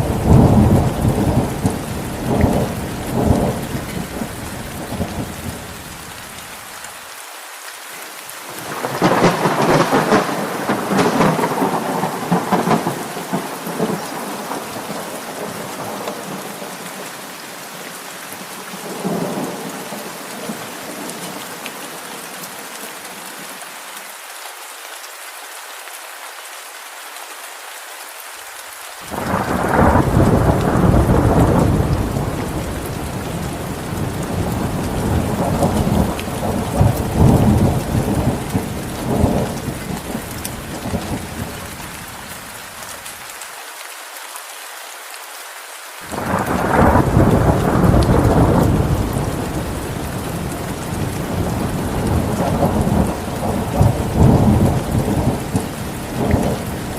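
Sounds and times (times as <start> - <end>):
thunder rumbling: 0.0 - 5.8, 8.6 - 16.4, 29.1 - 41.6, 46.1 - 56.9
steady rain: 0.0 - 56.9.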